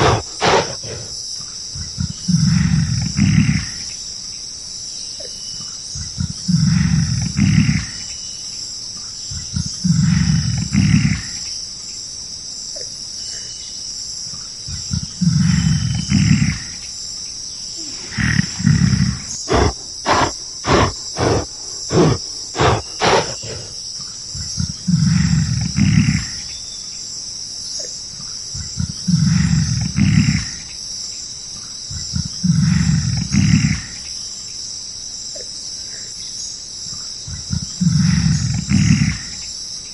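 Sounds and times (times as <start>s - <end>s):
large animal deep rasping calls: 0.0s - 1.2s, 17.8s - 23.8s
high insect buzzing: 17.8s - 23.8s.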